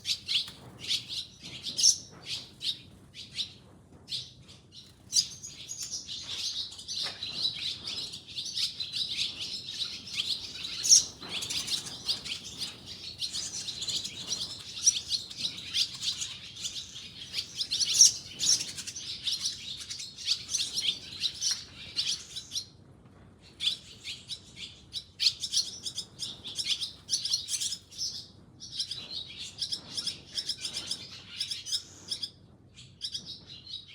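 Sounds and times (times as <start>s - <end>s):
birds chirping: 4.8s - 22.6s.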